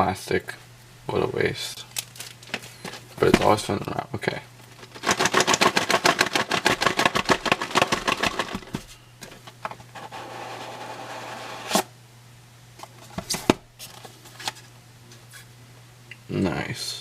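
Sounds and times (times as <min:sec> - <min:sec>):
plastic shrink wrap crinkling: 0:01.9 - 0:03.2.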